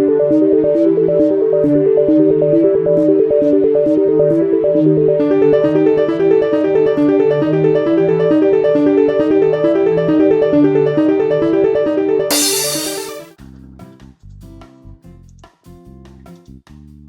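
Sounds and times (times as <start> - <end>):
repeating keyboard notes: 0.0 - 13.3.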